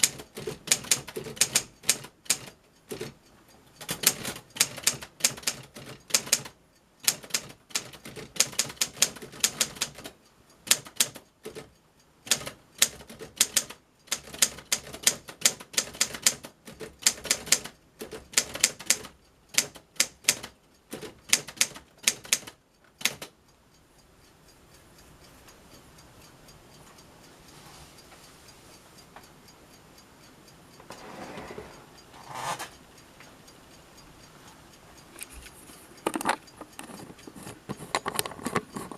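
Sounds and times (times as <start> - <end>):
manual typewriter typing: 0.0 - 3.2, 3.8 - 23.3
low hiss: 8.8 - 36.7.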